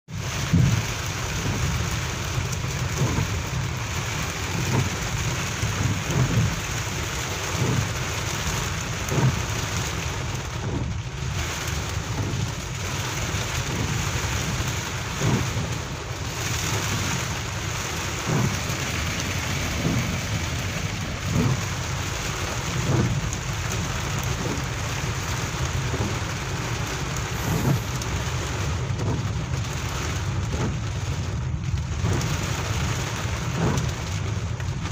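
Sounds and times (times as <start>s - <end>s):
heavy rain pouring: 0.0s - 34.9s
low rumble: 12.0s - 29.4s
loud thuds: 15.2s - 15.8s, 16.7s - 23.2s.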